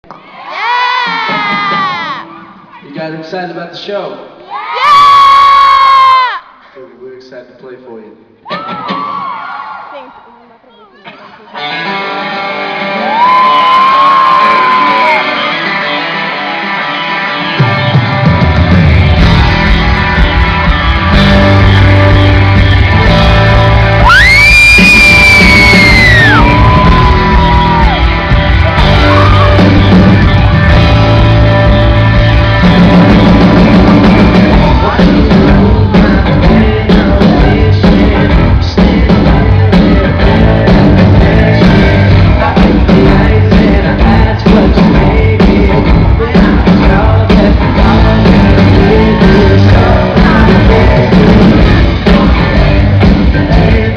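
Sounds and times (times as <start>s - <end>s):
rock band playing live: 0.2s - 2.8s, 11.4s - 53.9s.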